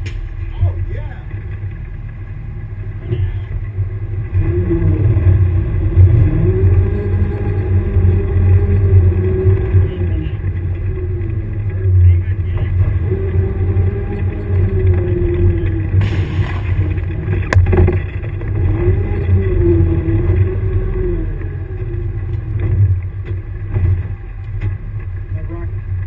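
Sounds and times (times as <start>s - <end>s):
vehicle engine running: 0.0s - 26.0s
sharp crack: 16.0s - 18.0s.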